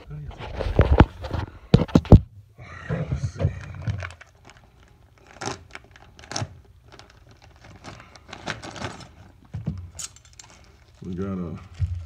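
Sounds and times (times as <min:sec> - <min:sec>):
packaging crinkling and ripping: 0:03.5 - 0:09.5.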